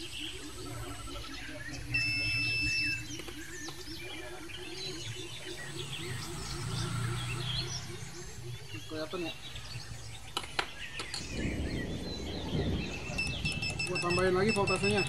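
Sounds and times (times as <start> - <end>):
birds chirping: 0.0 - 15.0
high electronic beep: 0.4 - 4.0, 12.9 - 15.0.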